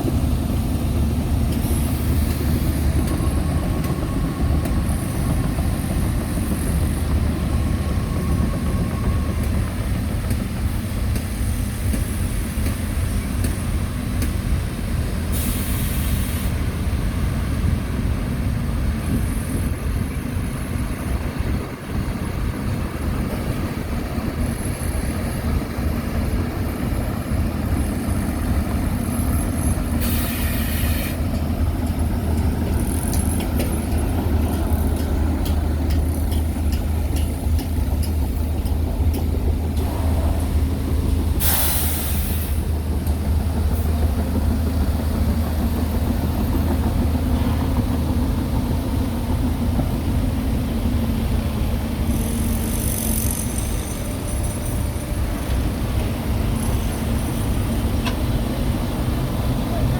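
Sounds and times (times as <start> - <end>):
heavy diesel machinery engine drone: 0.0 - 59.9
air-brake hisses: 15.3 - 16.6, 29.8 - 31.4, 41.3 - 42.7.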